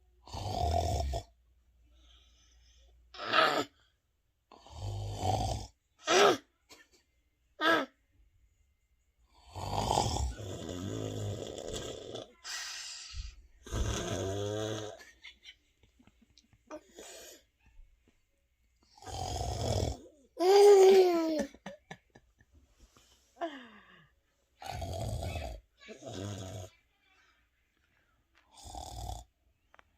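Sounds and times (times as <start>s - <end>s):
person snoring: 0.2s - 1.4s, 4.5s - 6.4s, 9.3s - 15.1s, 18.9s - 21.6s, 24.6s - 26.8s, 28.5s - 29.3s.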